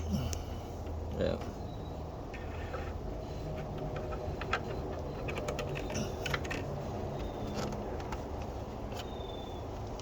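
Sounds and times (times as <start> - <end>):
plastic and metal parts clicking: 3.6 - 6.7.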